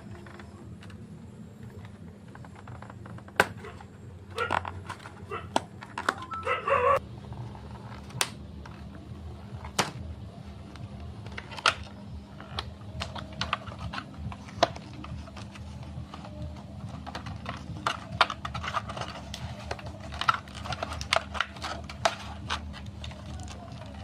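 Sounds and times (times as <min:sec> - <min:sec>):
steady low hum: 0:00.0 - 0:24.0
plastic wrapper crinkling: 0:11.3 - 0:24.0.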